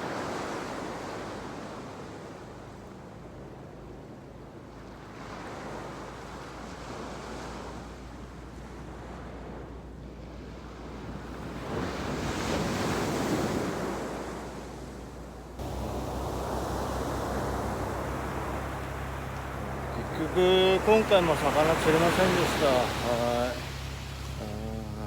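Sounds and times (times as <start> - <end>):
ocean surf breaking on beach: 0.0 - 25.0
steady low rumble: 14.7 - 25.0.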